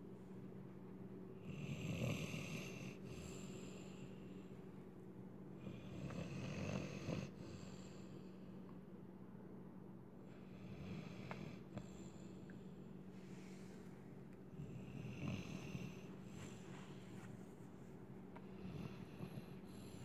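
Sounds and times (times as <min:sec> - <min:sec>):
dog snoring: 0:01.4 - 0:04.4, 0:05.6 - 0:08.3, 0:10.4 - 0:12.4, 0:14.5 - 0:17.1, 0:18.5 - 0:20.0.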